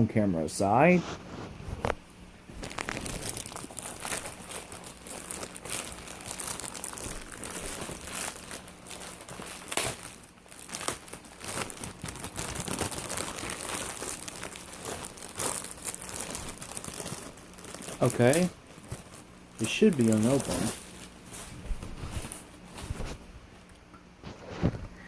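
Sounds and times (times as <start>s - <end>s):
packaging crinkling and rustling: 1.3s - 23.7s.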